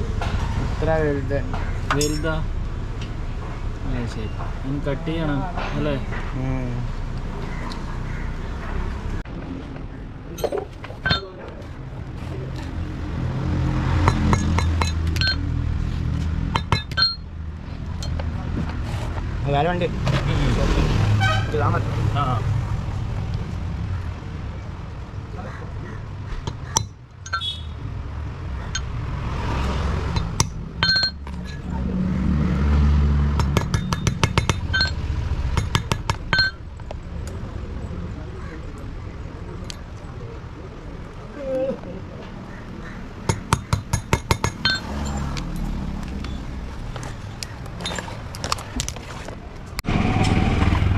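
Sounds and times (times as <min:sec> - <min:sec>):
engine humming: 0:00.0 - 0:50.9
metal tools clinking on metal: 0:01.5 - 0:02.5, 0:10.3 - 0:12.6, 0:14.1 - 0:15.5, 0:16.6 - 0:17.2, 0:26.5 - 0:27.6, 0:30.2 - 0:31.7, 0:33.5 - 0:35.0, 0:35.6 - 0:36.6, 0:43.5 - 0:49.0
metal parts clinking: 0:30.2 - 0:31.7, 0:44.4 - 0:45.8, 0:46.9 - 0:49.0.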